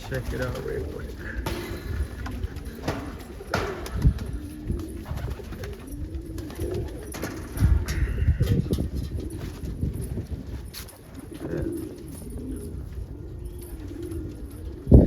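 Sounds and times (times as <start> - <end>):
dull thumps: 0.0 - 5.6
pigeons cooing: 0.0 - 15.0.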